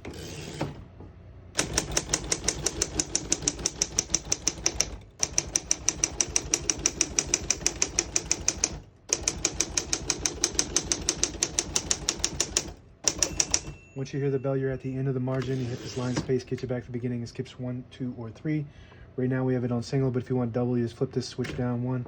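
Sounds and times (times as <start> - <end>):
manual typewriter typing: 1.6 - 13.8.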